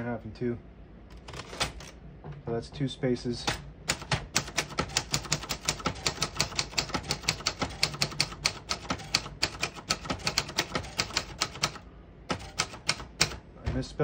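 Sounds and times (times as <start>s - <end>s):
manual typewriter keystrokes: 3.4s - 13.4s.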